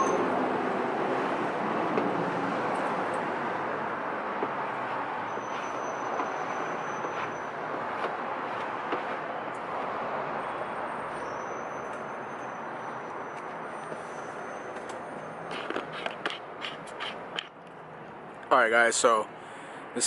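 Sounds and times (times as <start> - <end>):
wet sandpaper rasping: 4.8 - 9.2, 15.5 - 17.4.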